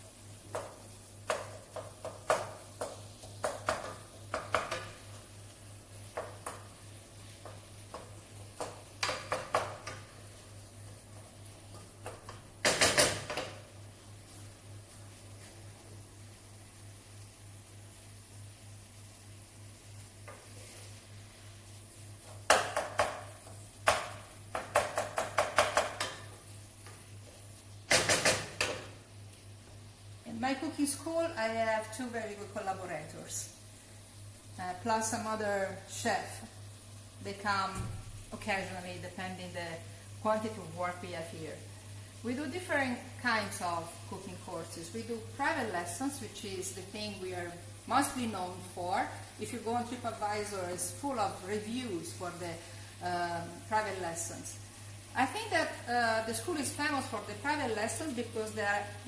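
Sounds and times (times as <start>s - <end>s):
utensil knocking against pot: 22.5s - 26.3s.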